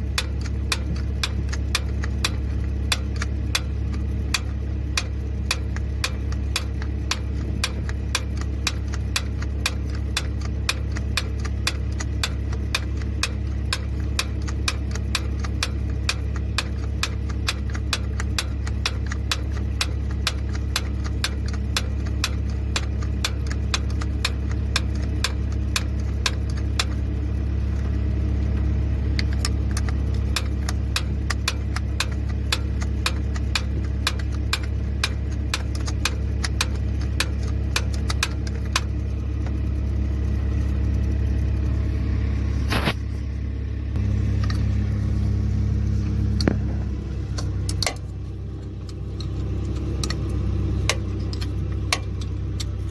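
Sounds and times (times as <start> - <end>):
fast even ticking: 0.0 - 39.7
diesel engine idling: 0.0 - 52.9.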